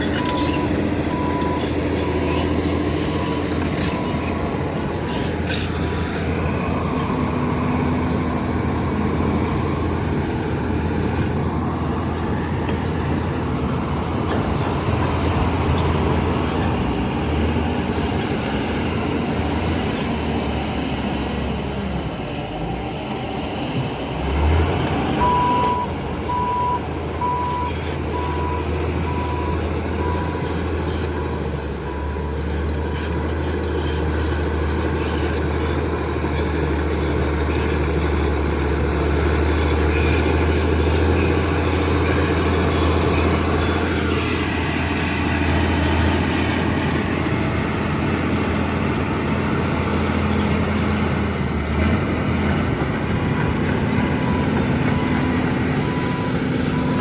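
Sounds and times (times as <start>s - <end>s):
heavy machinery diesel engine: 0.0s - 57.0s
reversing alarm beeping: 25.2s - 30.3s, 53.4s - 57.0s.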